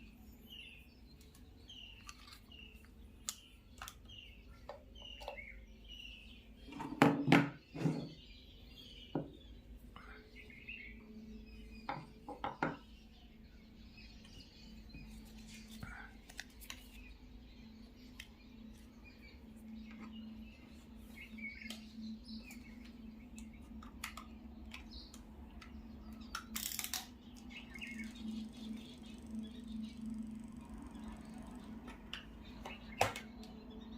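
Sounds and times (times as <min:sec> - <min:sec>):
birds chirping faintly: 0:00.0 - 0:33.9
steady low hum: 0:07.8 - 0:33.9.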